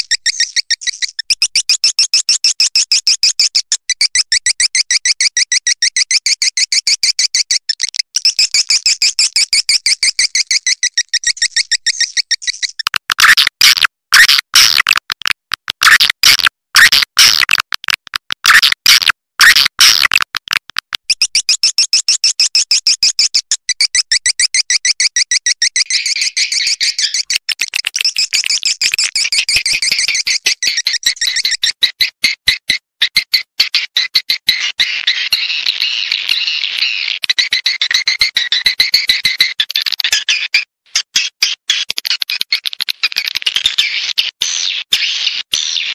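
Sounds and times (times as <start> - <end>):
sharp clicking chirps: 0.0 - 45.9.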